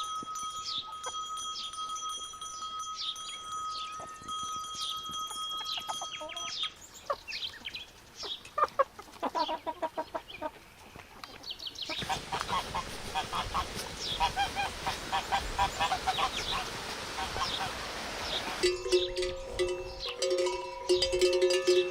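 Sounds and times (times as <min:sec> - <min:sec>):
farm fowl calling: 0:05.7 - 0:19.3.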